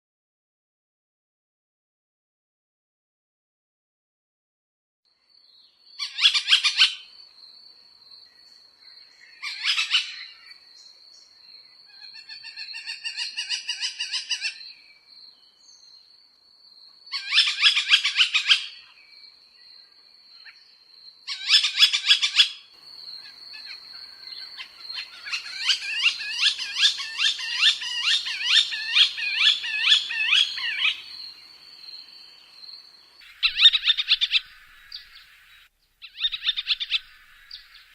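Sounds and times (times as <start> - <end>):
hawk calling rapid notes: 25.1 - 31.1.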